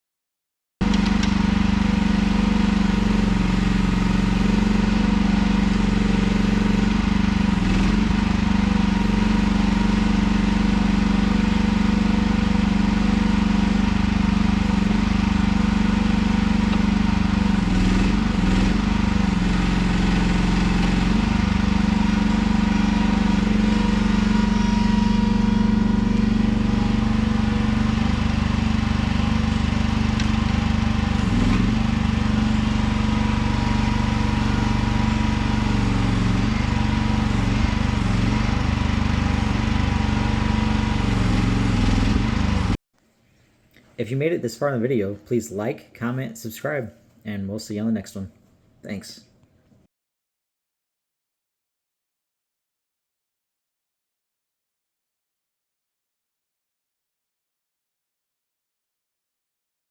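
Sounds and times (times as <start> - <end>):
machine engine running steadily: 0.8 - 42.8.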